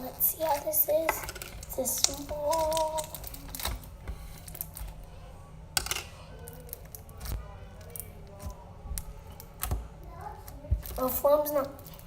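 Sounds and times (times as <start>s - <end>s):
foam slime crackling: 0.0s - 12.0s.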